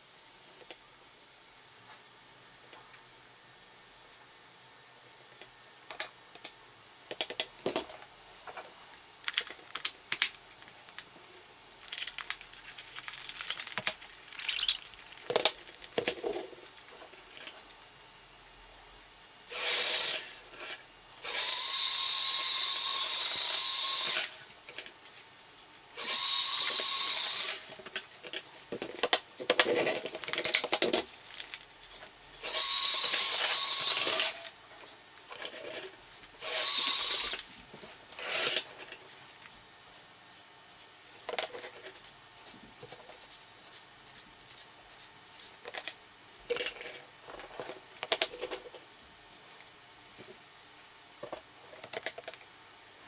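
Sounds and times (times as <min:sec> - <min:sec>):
small electric motor whirring: 0:21.3 - 0:46.0
handling clicks and taps: 0:27.6 - 0:32.4.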